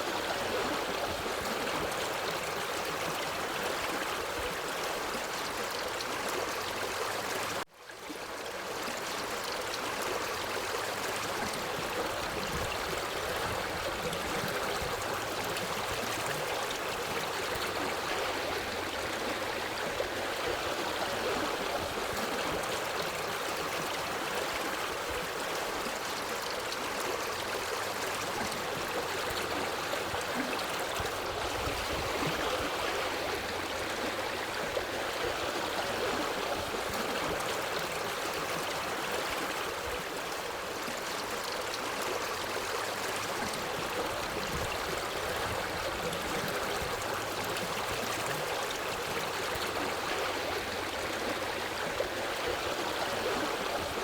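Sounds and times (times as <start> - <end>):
stream running over rocks: 0.0 - 54.0.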